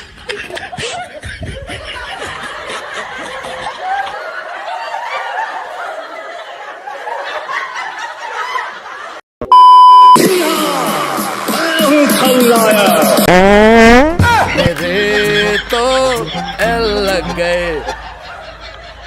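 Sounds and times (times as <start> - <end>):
people snickering and chuckling: 0.0 - 9.2, 14.3 - 19.0
loud steady beep: 9.5 - 10.2
music: 10.2 - 13.3, 14.2 - 18.1
person speaking: 14.6 - 17.9.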